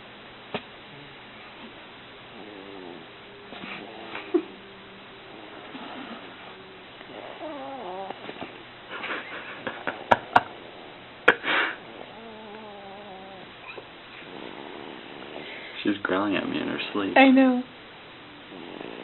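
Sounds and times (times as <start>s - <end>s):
baby growling in sleep: 2.3s - 8.6s, 9.8s - 15.9s, 18.4s - 19.0s.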